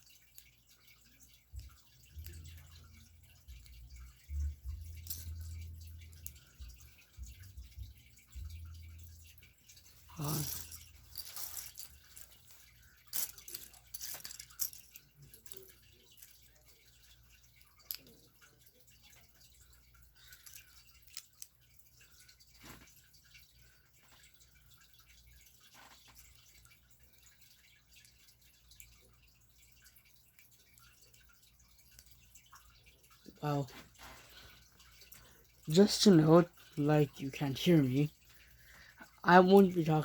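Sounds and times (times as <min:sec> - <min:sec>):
plastic pieces clicking together: 0:13.1 - 0:16.4.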